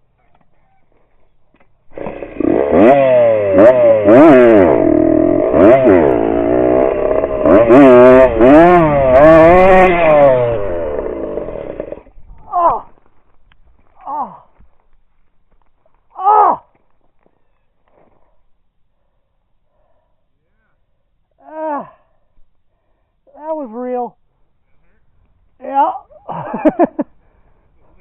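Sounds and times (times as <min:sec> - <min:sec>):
dirt bike engine revving: 0:01.9 - 0:12.7.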